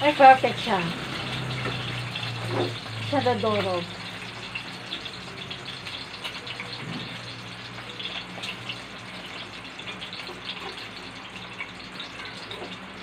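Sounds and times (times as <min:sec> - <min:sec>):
food sizzling in hot oil: 0:00.0 - 0:13.0
oil crackles and pops: 0:00.0 - 0:13.0.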